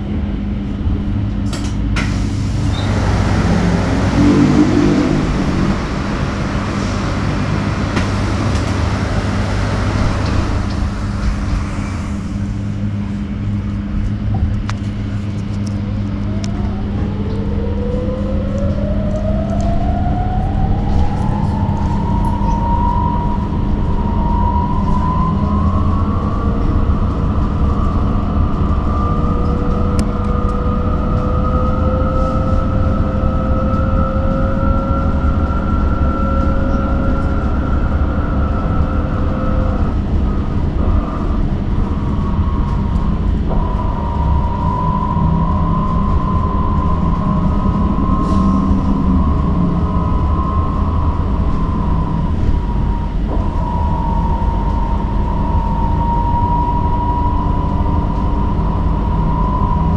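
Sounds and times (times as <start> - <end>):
low bus interior hum: 0.0 - 59.9
electric motor whine rising: 2.3 - 12.5.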